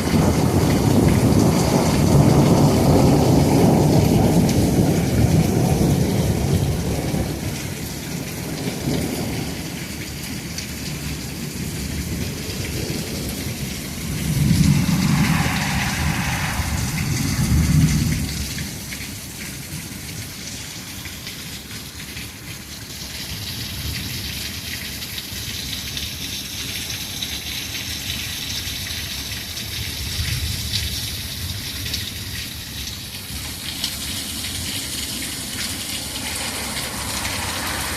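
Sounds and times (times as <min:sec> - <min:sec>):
rolling thunder: 0:00.0 - 0:09.7, 0:11.4 - 0:19.8, 0:33.3 - 0:37.9
heavy rain pouring: 0:00.0 - 0:37.9.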